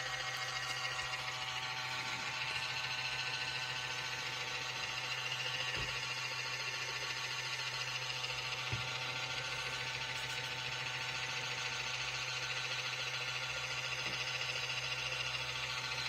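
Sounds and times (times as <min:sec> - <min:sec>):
small motor humming and whining: 0:00.0 - 0:16.0.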